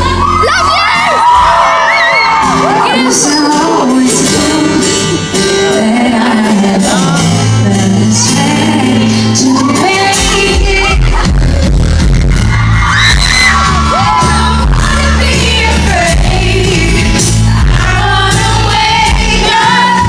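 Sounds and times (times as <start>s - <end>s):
crowd shouting and whooping: 0.0s - 5.5s, 9.4s - 20.0s
live pop band: 0.0s - 20.0s
woman singing: 2.7s - 11.8s, 14.0s - 20.0s.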